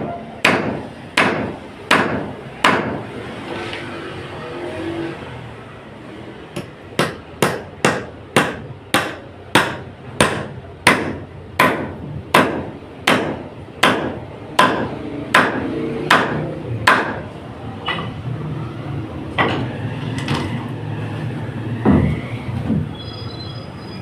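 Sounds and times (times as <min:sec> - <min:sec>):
hammer striking: 0:00.0 - 0:03.1, 0:06.5 - 0:18.1.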